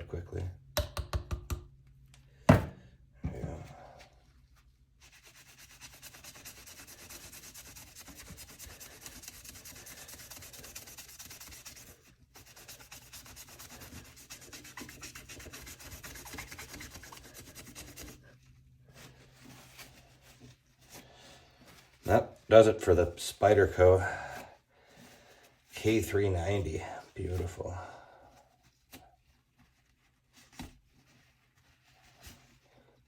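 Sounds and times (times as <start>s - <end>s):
sponge scrubbing metal blade: 5.2s - 18.4s.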